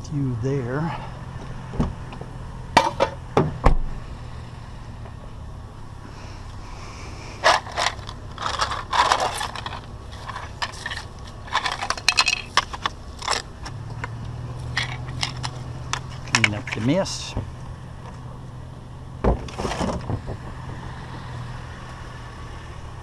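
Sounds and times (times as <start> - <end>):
metal fan clanking and scraping: 0.0 - 3.7, 7.1 - 18.6, 19.2 - 21.1
steady low hum: 0.0 - 23.0.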